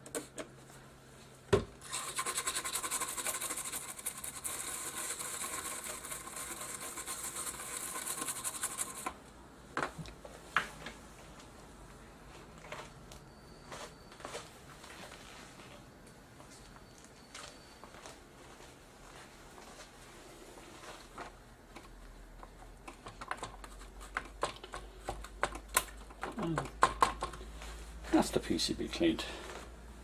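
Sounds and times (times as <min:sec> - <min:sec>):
brush scrubbing circuit board: 0:01.8 - 0:09.1.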